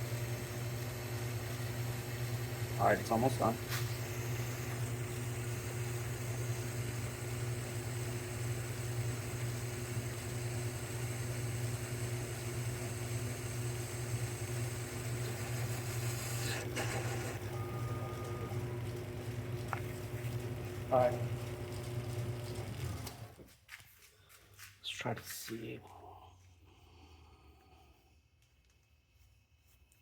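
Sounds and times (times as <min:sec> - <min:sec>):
lathe motor hum: 0:00.0 - 0:23.4
lathe cutting hiss: 0:00.9 - 0:17.5.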